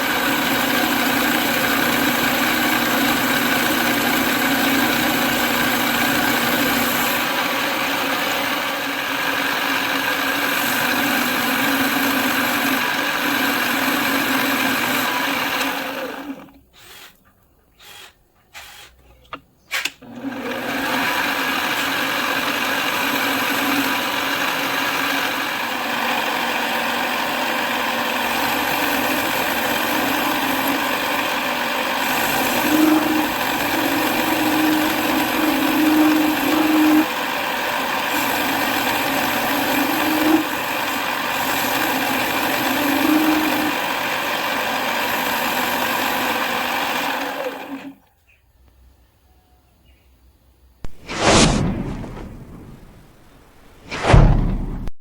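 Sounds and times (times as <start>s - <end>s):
short sounds: 50.9s - 55.0s.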